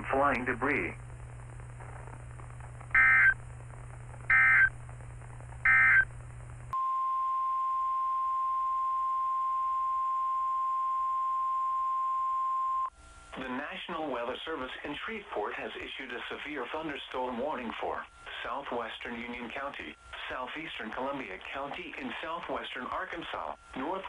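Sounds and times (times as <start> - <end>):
low hum: 0.0 - 13.4
digital data bursts: 3.0 - 3.4, 4.3 - 4.7
steady alarm tone: 3.0 - 3.4, 4.3 - 4.7, 5.7 - 6.0.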